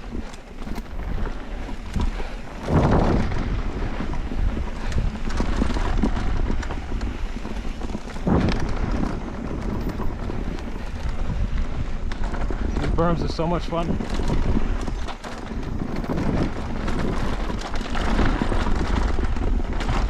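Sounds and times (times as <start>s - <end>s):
bike tyres rumbling over dirt: 0.0s - 20.0s
wind buffeting microphone: 0.0s - 20.0s.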